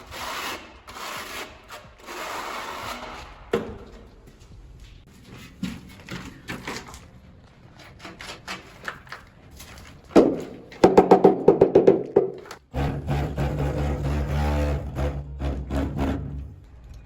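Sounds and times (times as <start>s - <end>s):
knocks and taps: 10.2s - 12.6s.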